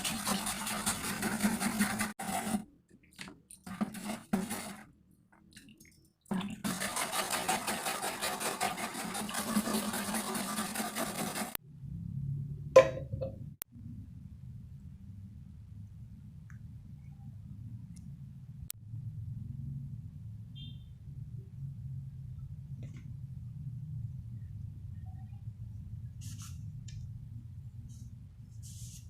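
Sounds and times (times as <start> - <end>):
low hum: 11.6 - 26.2.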